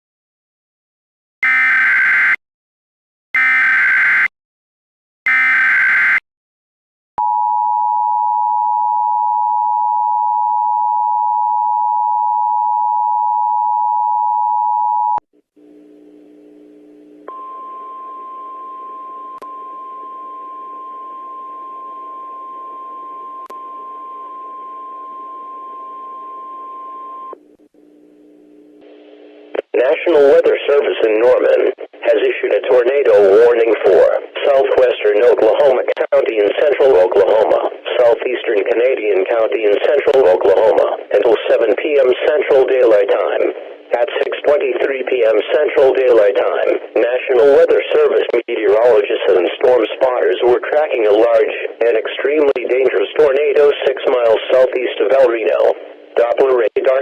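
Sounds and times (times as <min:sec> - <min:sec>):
two-tone attention signal: 0:17.3 - 0:27.3
steady single tone: 0:17.3 - 0:27.4.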